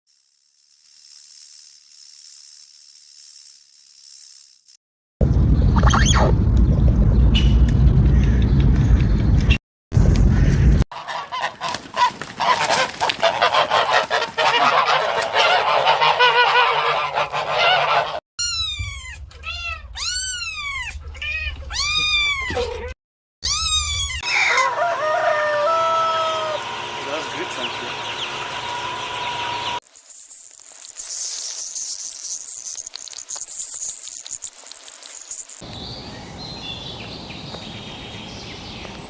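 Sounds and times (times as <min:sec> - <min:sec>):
rising and falling animal calls: 0:23.5 - 0:29.8
chorus of animal calls: 0:24.2 - 0:29.8, 0:35.7 - 0:39.0.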